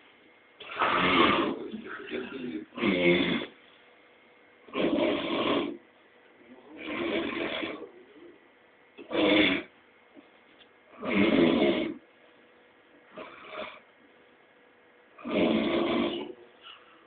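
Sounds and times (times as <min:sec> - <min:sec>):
person snoring: 0:00.6 - 0:03.6, 0:04.7 - 0:05.8, 0:06.5 - 0:08.3, 0:09.0 - 0:09.7, 0:10.9 - 0:12.0, 0:13.2 - 0:13.8, 0:15.2 - 0:16.8.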